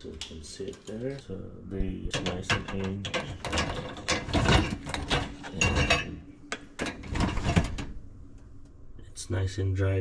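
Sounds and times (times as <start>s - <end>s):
dish racks rattling on rollers: 2.2s - 6.1s.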